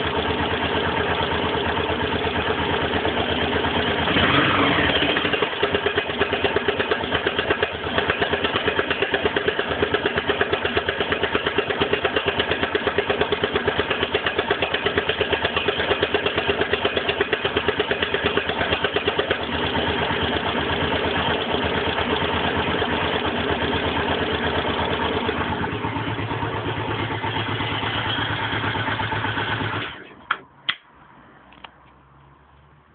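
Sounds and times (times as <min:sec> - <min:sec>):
rapid engine knock: 0:00.0 - 0:30.0
motorcycle engine idling: 0:00.0 - 0:30.4.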